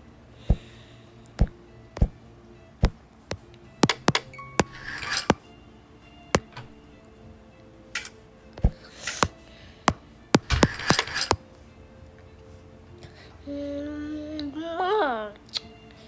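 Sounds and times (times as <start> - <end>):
faint background music: 0.0 - 16.0
sharp knocks and clicks: 2.8 - 5.4, 6.4 - 6.7, 8.0 - 11.4.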